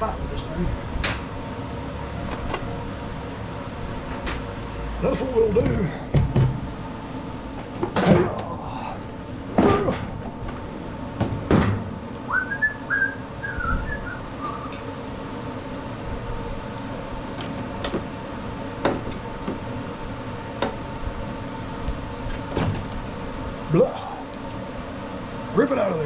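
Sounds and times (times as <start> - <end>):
person whistling: 12.3 - 14.8.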